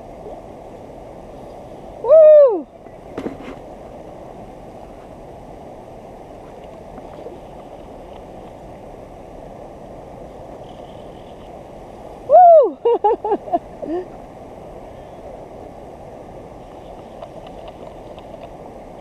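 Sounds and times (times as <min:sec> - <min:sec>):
creek water flowing: 0:00.0 - 0:19.0
woman whooping excitedly: 0:02.0 - 0:02.7, 0:12.3 - 0:13.0.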